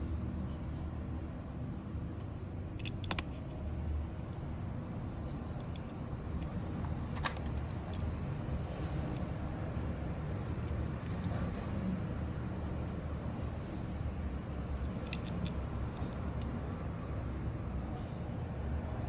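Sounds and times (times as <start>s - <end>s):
street traffic rumble: 0.0s - 19.0s
sharp small clicks: 2.8s - 3.6s.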